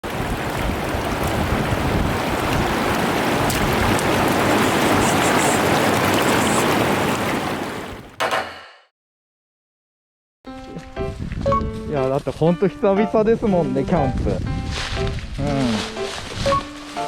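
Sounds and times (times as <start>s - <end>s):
stream rushing: 0.0s - 8.1s, 15.9s - 17.0s.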